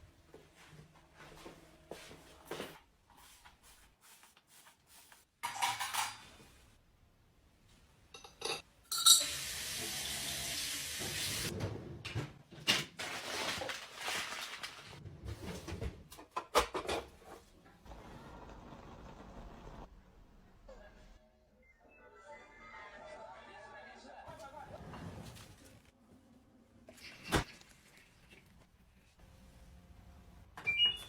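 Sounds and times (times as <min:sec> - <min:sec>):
dishes and utensils clattering: 0:05.4 - 0:06.5, 0:08.2 - 0:09.4, 0:15.5 - 0:17.4.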